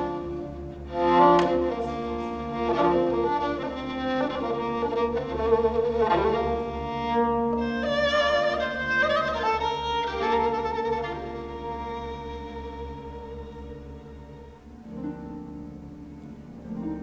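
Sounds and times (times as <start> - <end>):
orchestral music with bowed strings: 0.0 - 17.0.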